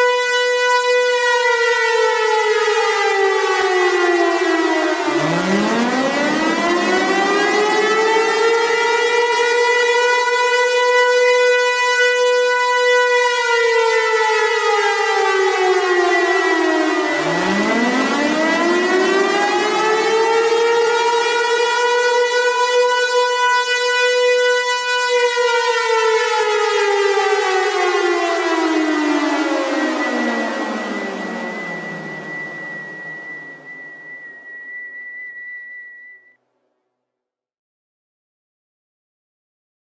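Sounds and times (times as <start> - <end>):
warning siren wailing: 0.0 - 36.2
thin steady high tone: 29.6 - 36.3.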